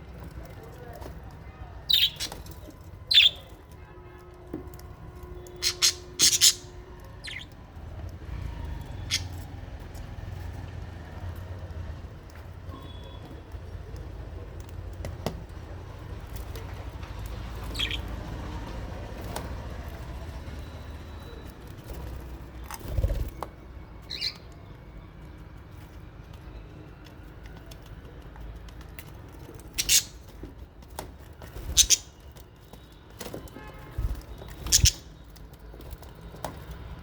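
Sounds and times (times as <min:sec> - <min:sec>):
birds chirping: 0:00.2 - 0:03.7, 0:05.0 - 0:11.6, 0:16.5 - 0:28.4, 0:29.0 - 0:32.9, 0:34.0 - 0:36.0
birds squawking: 0:01.9 - 0:02.5, 0:03.1 - 0:03.5, 0:05.5 - 0:07.6, 0:08.9 - 0:09.5, 0:17.6 - 0:18.2, 0:24.1 - 0:24.4, 0:29.7 - 0:30.3, 0:31.6 - 0:32.2, 0:34.0 - 0:35.2.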